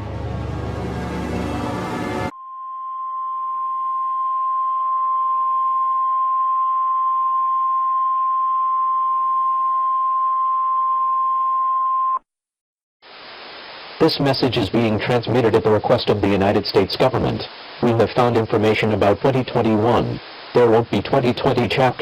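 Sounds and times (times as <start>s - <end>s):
music: 0.0s - 4.5s
faint radio hiss: 13.0s - 22.0s.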